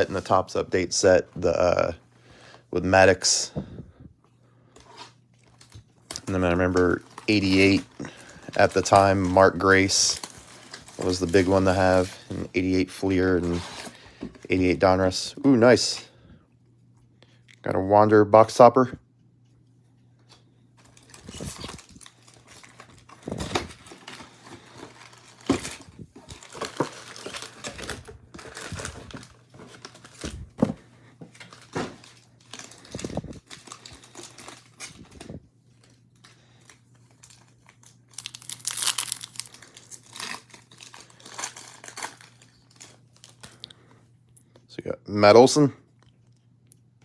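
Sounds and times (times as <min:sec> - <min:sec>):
foil wrappers crinkling: 0:04.9 - 0:16.0, 0:20.8 - 0:43.8.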